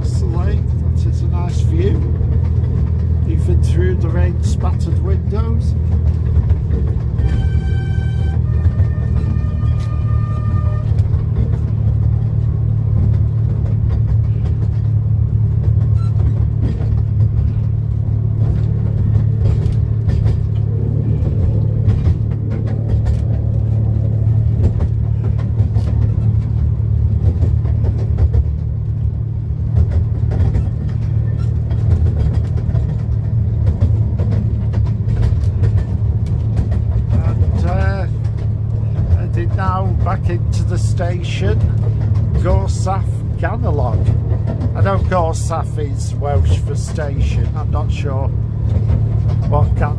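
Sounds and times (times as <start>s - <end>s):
railway carriage rumbling on track: 0.0s - 49.9s.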